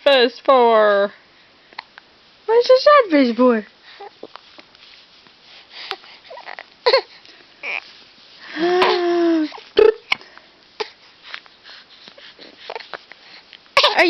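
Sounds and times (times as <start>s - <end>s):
baby whimpering: 5.9s - 7.9s, 8.5s - 9.8s
baby hiccup: 13.8s - 14.0s.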